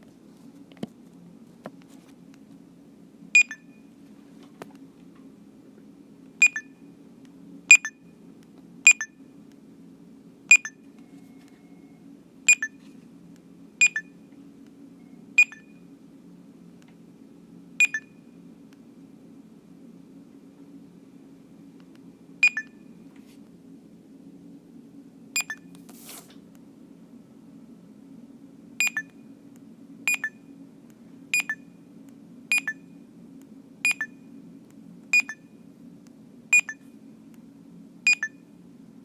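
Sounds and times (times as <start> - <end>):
barcode scanner beeps: 3.4 - 3.9, 6.4 - 6.8, 7.7 - 8.0, 8.9 - 9.2, 10.5 - 12.8, 13.8 - 14.2, 15.4 - 15.8, 17.8 - 18.2, 22.4 - 22.8, 25.4 - 25.7, 28.8 - 29.2, 30.1 - 30.5, 31.4 - 31.7, 32.5 - 33.0, 33.9 - 34.3, 35.2 - 35.5, 36.6 - 36.9, 38.1 - 38.4.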